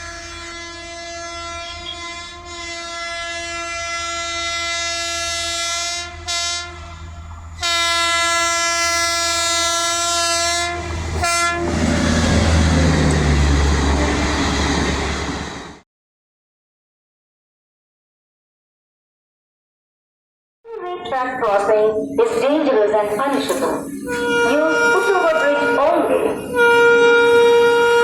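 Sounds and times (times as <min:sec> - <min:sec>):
shrill train horn: 0:00.0 - 0:12.0, 0:23.8 - 0:28.0
train rumbling and wheel clatter: 0:00.0 - 0:15.8, 0:21.3 - 0:28.0.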